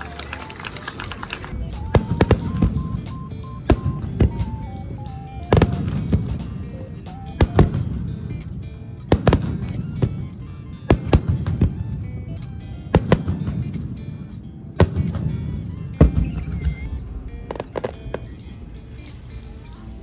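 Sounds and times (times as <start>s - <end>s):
fireworks bangs: 0.0s - 7.8s
music playing: 0.0s - 20.0s.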